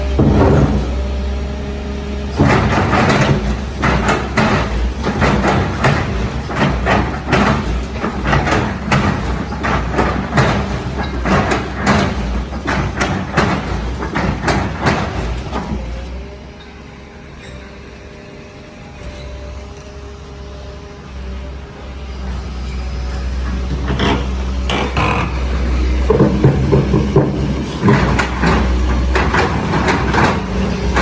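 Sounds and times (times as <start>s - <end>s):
heavy machine engine rumbling: 0.0s - 31.0s
irregular knocks and clanks: 0.1s - 1.0s, 2.4s - 15.9s, 23.4s - 31.0s.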